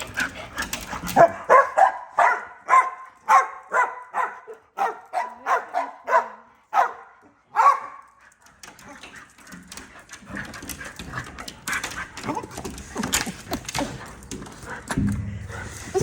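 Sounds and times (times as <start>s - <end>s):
dog barking: 1.2s - 8.2s.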